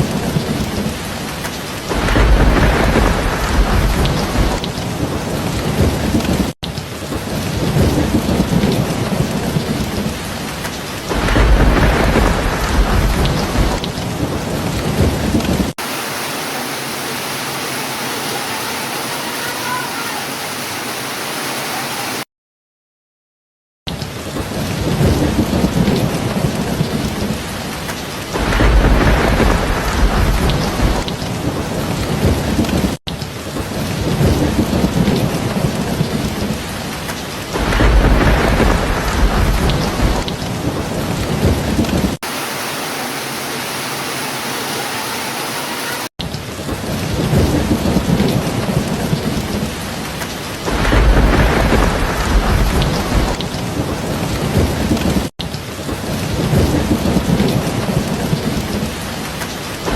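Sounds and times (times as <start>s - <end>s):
thunder rumbling: 0.0s - 16.0s, 24.2s - 42.2s, 46.5s - 59.9s
heavy rain: 0.0s - 22.3s, 23.9s - 59.9s.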